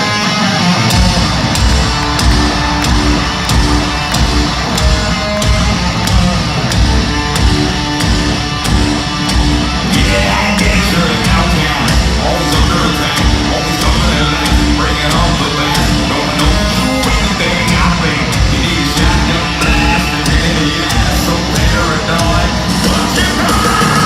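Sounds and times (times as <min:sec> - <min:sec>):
hard rock music: 0:00.0 - 0:24.0.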